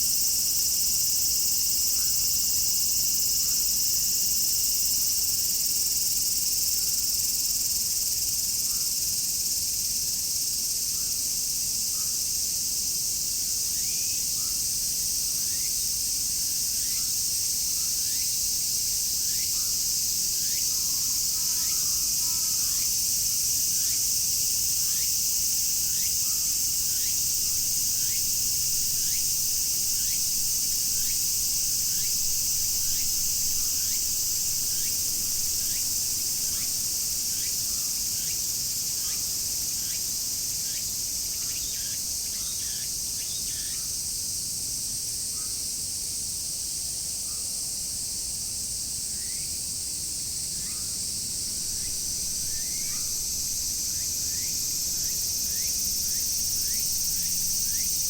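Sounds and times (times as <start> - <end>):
cicadas buzzing: 0.0 - 58.0
short falling insect call: 23.7 - 43.9, 49.1 - 58.0.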